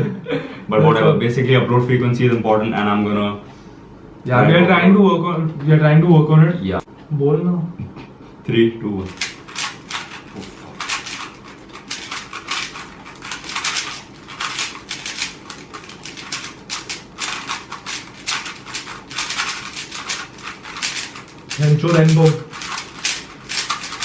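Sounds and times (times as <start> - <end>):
puzzle cubes clicking and clacking: 9.1 - 24.0.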